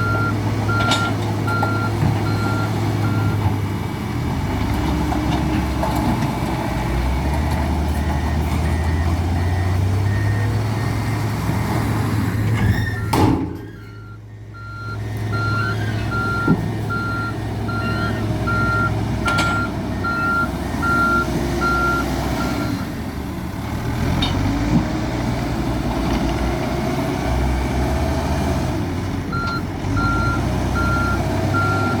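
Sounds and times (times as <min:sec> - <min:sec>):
reversing alarm beeping: 0:00.0 - 0:03.4, 0:07.9 - 0:11.0, 0:12.9 - 0:22.8, 0:29.3 - 0:32.0
diesel engine under load: 0:00.0 - 0:32.0.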